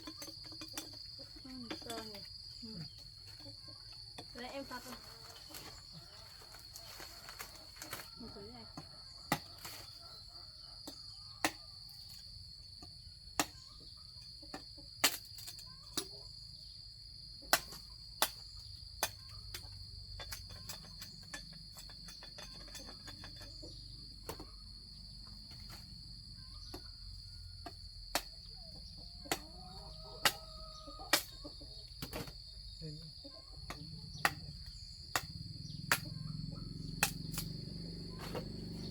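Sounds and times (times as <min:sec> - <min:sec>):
blade chopping sugarcane: 0:08.7 - 0:10.0, 0:10.8 - 0:12.2, 0:13.3 - 0:13.7, 0:17.5 - 0:19.7, 0:27.6 - 0:28.5, 0:29.2 - 0:30.5, 0:34.2 - 0:36.1, 0:37.0 - 0:38.9.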